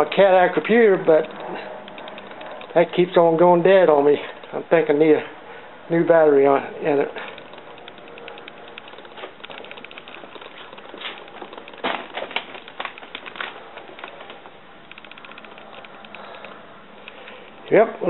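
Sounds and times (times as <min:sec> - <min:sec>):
mechanical clicking and ticking: 0:00.0 - 0:03.4, 0:07.0 - 0:17.8.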